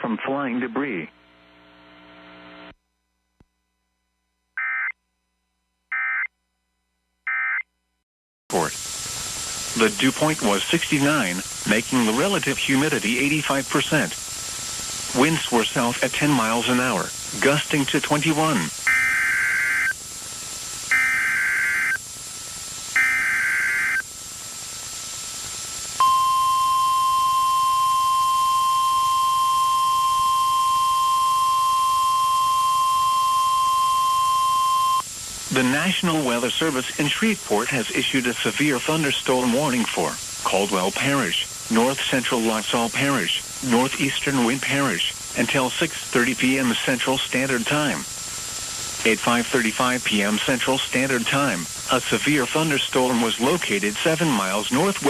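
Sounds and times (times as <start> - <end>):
faint hum: 0.0 - 4.5, 8.5 - 55.0
digital data tone bursts: 15.2 - 20.0, 20.9 - 22.0, 22.9 - 24.0
steady single-tone warning alarm: 18.1 - 20.0, 20.8 - 22.1, 22.9 - 24.1, 26.0 - 35.1.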